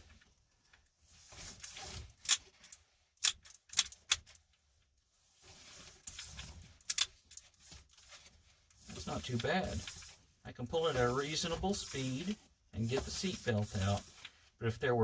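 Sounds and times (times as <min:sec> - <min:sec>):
seatbelt webbing rustling: 0:00.0 - 0:14.6
retractor mechanism clicks: 0:02.2 - 0:04.4, 0:06.9 - 0:07.4.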